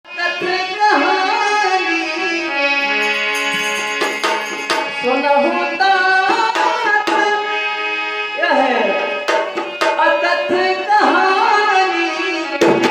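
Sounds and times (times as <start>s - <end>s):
sustained instrumental accompaniment: 0.1s - 12.9s
drum strokes: 3.3s - 5.1s, 9.2s - 10.2s
person singing long sliding notes: 10.0s - 12.6s.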